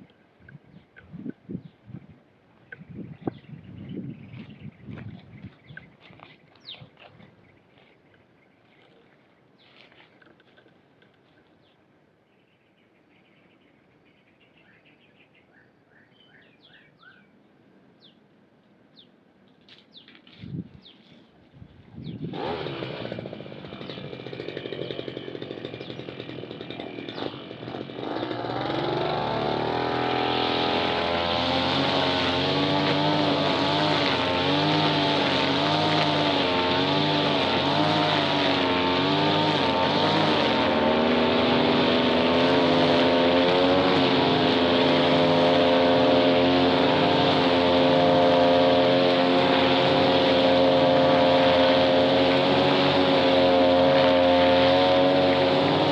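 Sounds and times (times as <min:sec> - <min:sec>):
small petrol engine running: 0:22.0 - 0:55.9.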